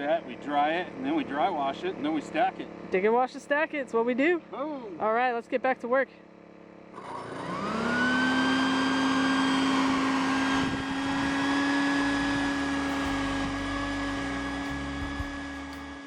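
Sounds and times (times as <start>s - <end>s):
vacuum motor whining: 6.9s - 16.0s.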